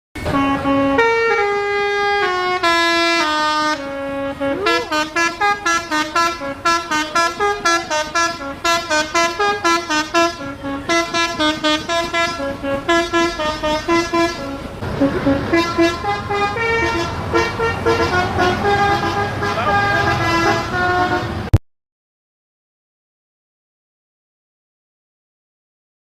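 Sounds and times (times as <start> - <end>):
multi-tone air horn tune: 0.2 - 21.6.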